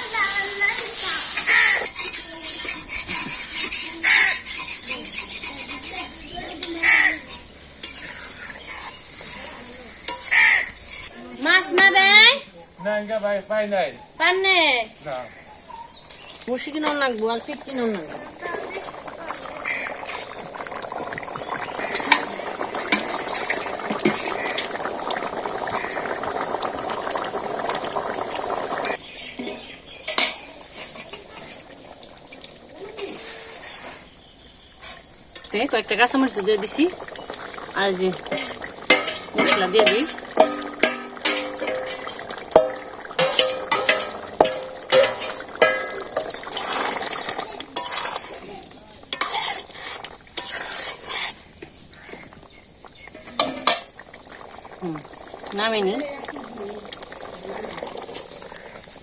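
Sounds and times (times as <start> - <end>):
curry bubbling and sizzling in pan: 0.0 - 59.0
spatula scraping a cooking pot: 0.5 - 11.2, 16.0 - 32.4, 33.0 - 34.2, 34.8 - 52.4
crow cawing: 1.4 - 1.9, 4.0 - 4.4, 6.7 - 7.3, 10.2 - 10.8, 19.6 - 20.2, 24.1 - 24.8, 25.6 - 26.4, 51.9 - 52.3.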